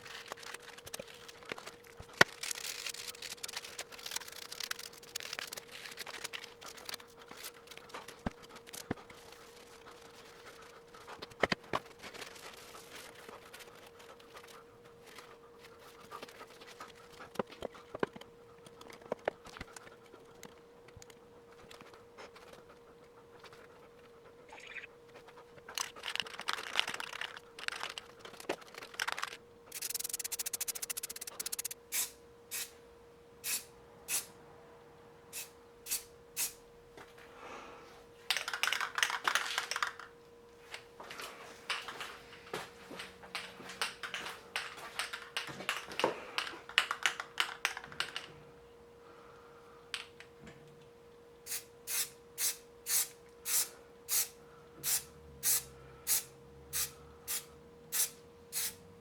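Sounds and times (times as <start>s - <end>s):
faint steady hum: 0.0s - 59.0s
spray paint can hissing: 2.2s - 7.0s, 29.7s - 32.7s, 33.4s - 34.3s, 35.4s - 36.6s, 51.5s - 58.8s.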